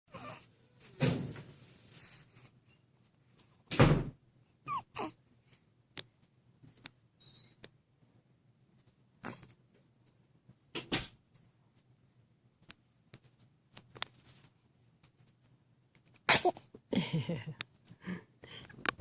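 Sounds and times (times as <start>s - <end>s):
pet sneezing: 16.3s - 16.6s.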